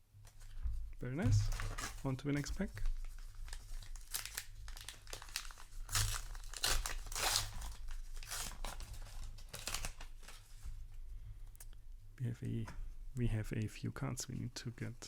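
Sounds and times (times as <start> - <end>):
paper wrapper tearing and crinkling: 1.5 - 2.4, 3.0 - 10.4.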